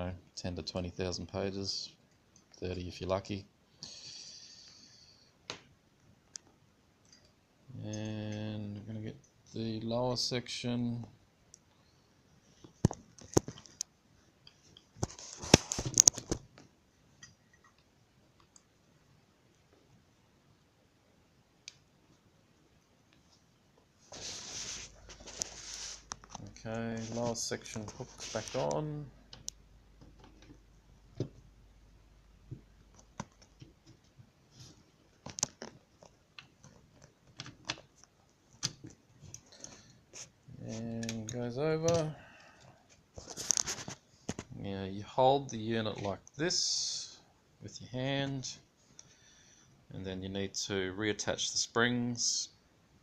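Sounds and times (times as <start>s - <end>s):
rustling: 23.1s - 41.5s, 42.9s - 44.6s.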